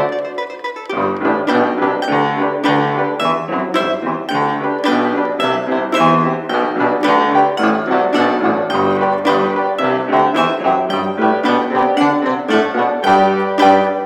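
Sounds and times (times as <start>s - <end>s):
solo piano chords: 1.0s - 14.0s.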